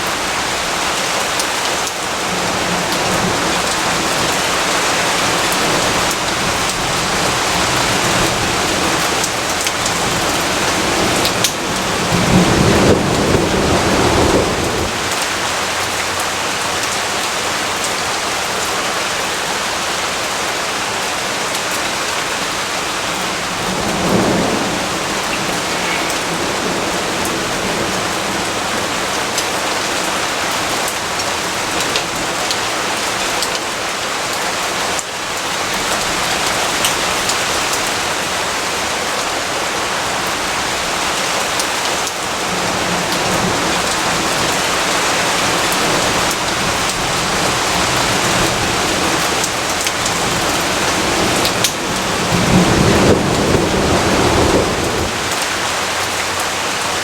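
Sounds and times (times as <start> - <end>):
steady rain: 0.0 - 57.0
thunder rumbling: 2.1 - 16.2, 22.6 - 32.4, 42.3 - 56.4.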